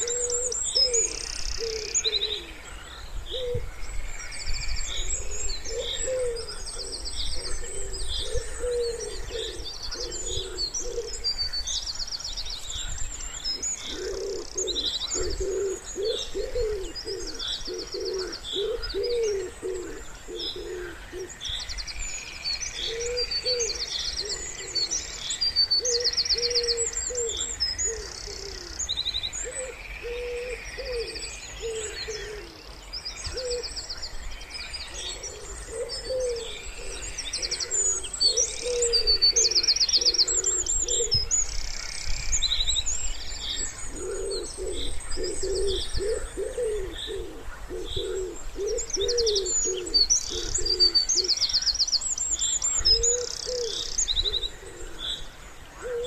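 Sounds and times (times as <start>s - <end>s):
wood pigeon cooing: 0.0s - 2.6s, 5.1s - 11.3s, 13.6s - 21.4s, 22.8s - 25.0s, 25.8s - 28.8s, 29.4s - 32.6s, 33.2s - 33.7s, 34.9s - 41.3s, 43.6s - 51.4s, 52.9s - 55.2s, 55.8s - 56.0s
songbirds chirping and trilling: 0.0s - 56.0s.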